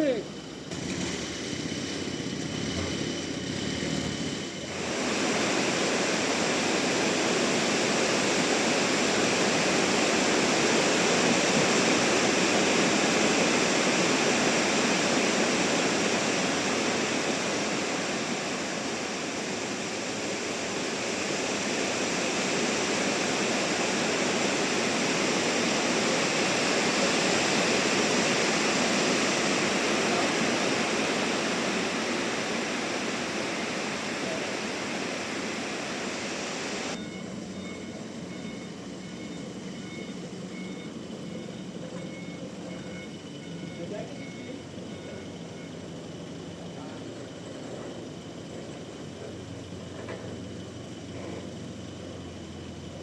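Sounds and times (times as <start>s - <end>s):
band saw cutting log: 0.5s - 6.2s.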